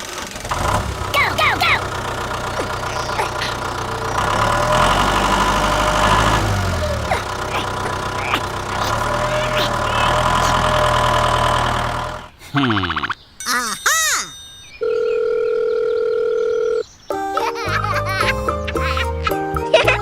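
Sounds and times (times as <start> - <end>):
engine idling: 0.0 - 12.3
birds chirping: 1.1 - 19.5.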